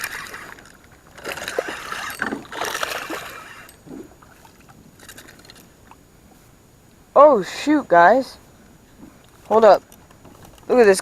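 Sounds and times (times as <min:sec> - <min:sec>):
water splashing: 0:00.0 - 0:06.1
handling noise at boat: 0:00.0 - 0:07.1, 0:08.4 - 0:11.0.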